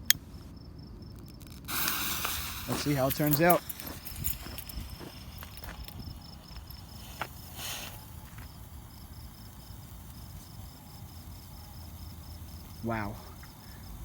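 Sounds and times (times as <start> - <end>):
sharp click: 0.0 - 0.2
crickets chirping: 0.0 - 14.0
brief hiss: 1.7 - 4.0, 7.1 - 8.1.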